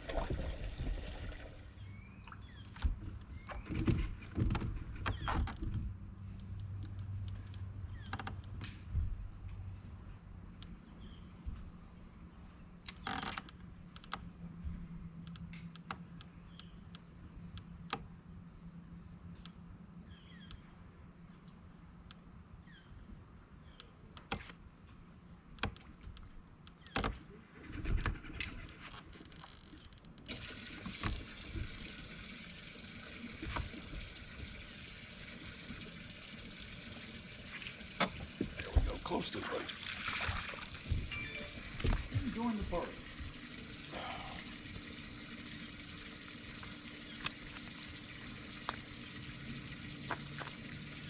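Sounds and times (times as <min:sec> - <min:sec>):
gear knocks and clicks in boat: 0:02.4 - 0:08.8, 0:12.8 - 0:18.2, 0:23.7 - 0:31.2
electric trolling motor humming: 0:30.3 - 0:39.2, 0:40.7 - 0:51.0.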